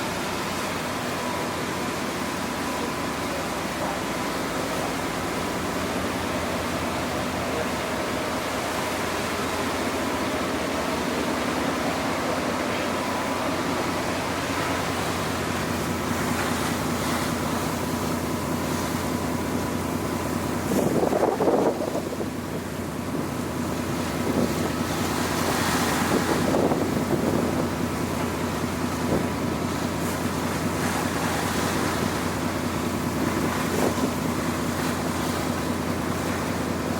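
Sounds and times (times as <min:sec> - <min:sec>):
ferry engine drone: 0:00.0 - 0:36.9
water rushing past hull: 0:00.0 - 0:36.9
wind buffeting microphone: 0:20.0 - 0:29.5.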